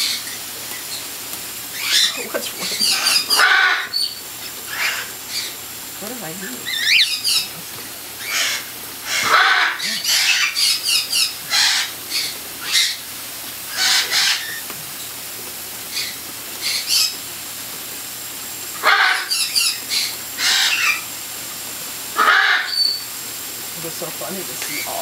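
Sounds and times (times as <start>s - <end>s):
cockatiels squawking: 1.7s - 5.6s, 6.4s - 13.0s, 13.7s - 14.6s, 15.9s - 17.2s, 18.8s - 21.1s, 22.2s - 23.1s.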